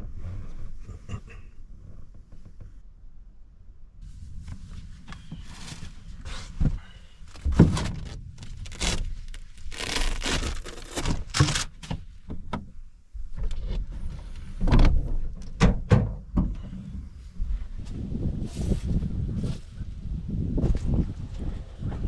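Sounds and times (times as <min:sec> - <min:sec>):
constant low rumble: 0:00.0 - 0:22.0
rustling: 0:04.0 - 0:12.2.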